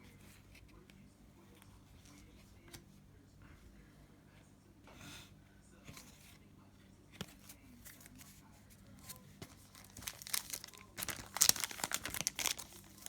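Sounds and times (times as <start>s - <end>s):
wrapper tearing and crinkling: 9.6s - 13.0s.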